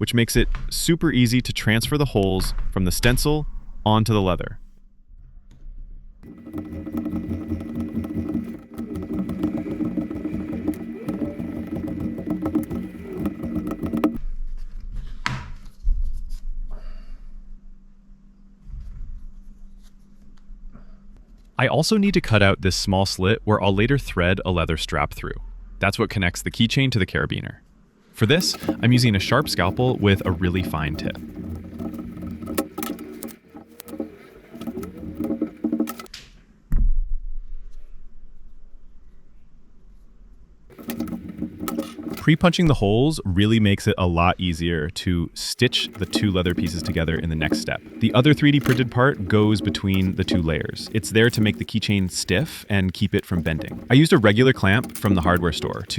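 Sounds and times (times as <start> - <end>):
tool knocks: 6.2 - 14.2, 28.4 - 36.1.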